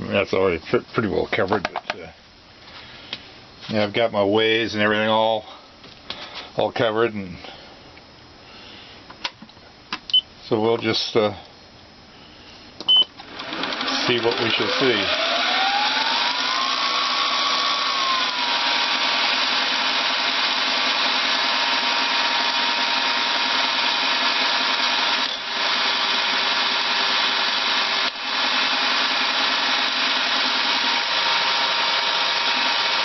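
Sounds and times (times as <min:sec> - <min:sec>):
milling machine spindle whine: 0:13.2 - 0:33.0.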